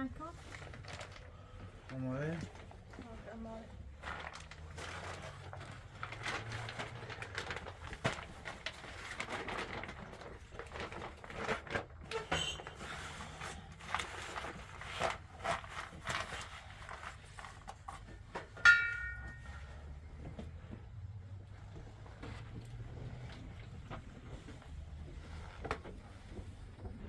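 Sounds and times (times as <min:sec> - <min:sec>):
dishes and utensils clicking: 0:18.6 - 0:19.6
loud ringing clink: 0:18.6 - 0:19.7.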